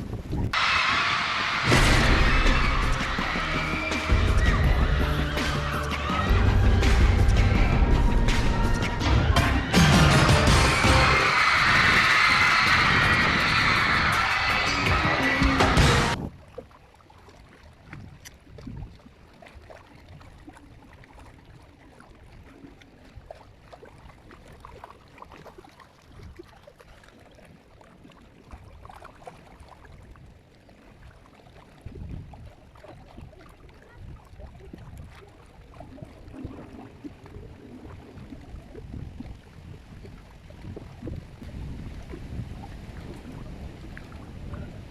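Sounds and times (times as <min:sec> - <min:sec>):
wind buffeting microphone: 0:00.0 - 0:01.6, 0:11.2 - 0:15.2, 0:16.1 - 0:16.6, 0:17.8 - 0:19.1, 0:31.8 - 0:44.9.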